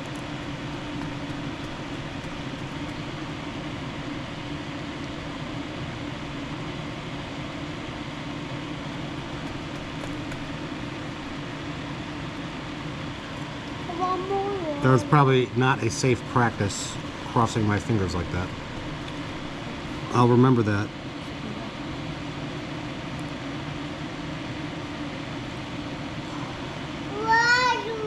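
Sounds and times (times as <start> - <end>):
low hum: 0.0 - 27.2
fan whirring: 0.0 - 28.0.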